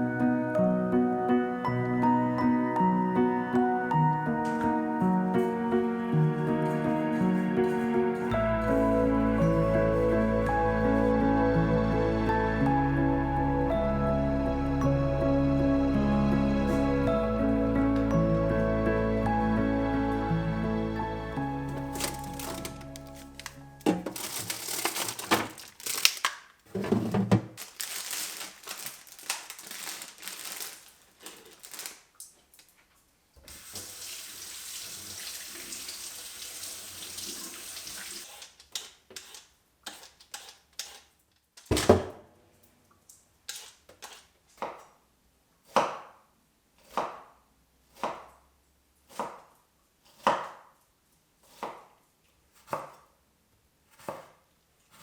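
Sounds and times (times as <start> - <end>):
kitchen clattering: 21.7 - 30.7
water tap running: 33.5 - 38.3
knife chopping on cutting board: 45.7 - 46.1, 46.8 - 47.2, 48.0 - 48.3, 49.1 - 49.4, 50.2 - 50.6, 51.4 - 51.9, 52.6 - 53.0, 53.9 - 54.4.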